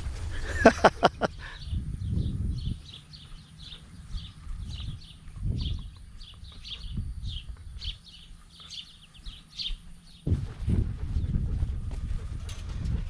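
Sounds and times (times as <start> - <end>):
birds chirping: 0.0 - 10.3
camera rubbing rumbles: 10.3 - 13.0.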